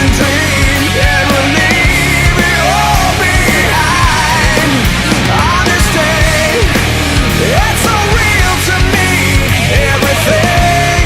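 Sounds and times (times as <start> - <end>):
heavy rock music: 0.0 - 11.0.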